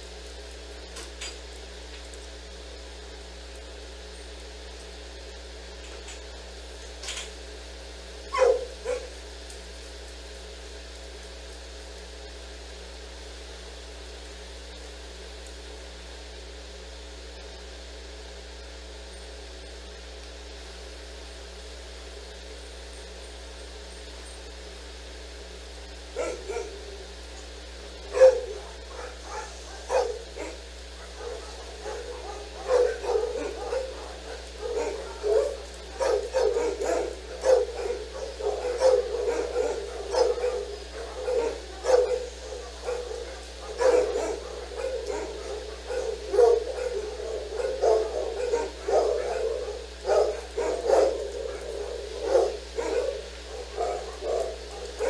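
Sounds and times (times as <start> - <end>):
steady low hum: 0.0 - 55.0
dog barking: 8.3 - 9.3, 26.1 - 55.0.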